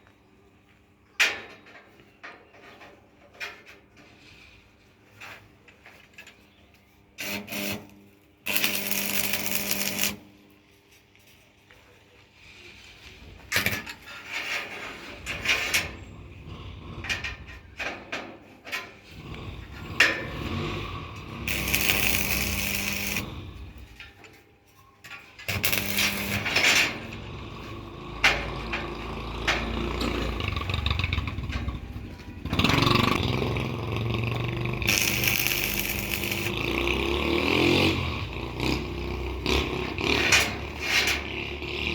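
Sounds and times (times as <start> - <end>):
metal scraping: 8.5 - 10.3, 18.8 - 38.4.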